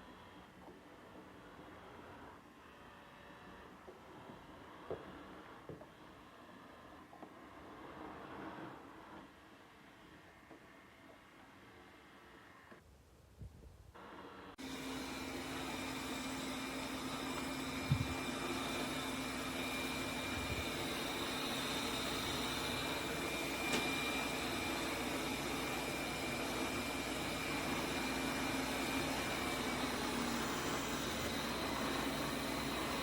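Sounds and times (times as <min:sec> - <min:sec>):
robot vacuum whirring: 0:14.0 - 0:33.0.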